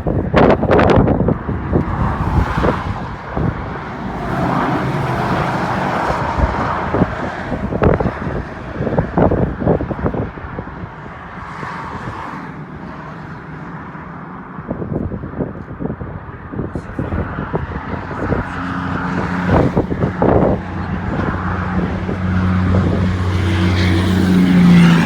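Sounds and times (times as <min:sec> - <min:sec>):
wind thumping on microphone: 0:00.0 - 0:25.0
road traffic rushing past: 0:00.1 - 0:25.0.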